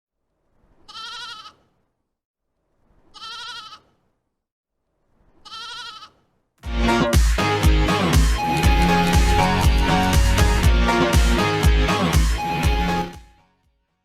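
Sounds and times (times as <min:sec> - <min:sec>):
sheep bleating: 0:00.9 - 0:01.6, 0:03.2 - 0:03.9, 0:05.4 - 0:06.3
music: 0:06.6 - 0:14.0.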